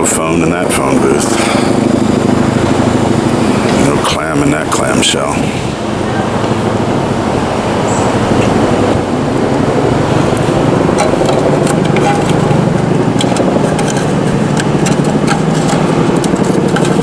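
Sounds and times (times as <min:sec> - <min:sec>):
vehicle engines humming: 0:00.0 - 0:17.0
sharp ticks: 0:10.3 - 0:17.0.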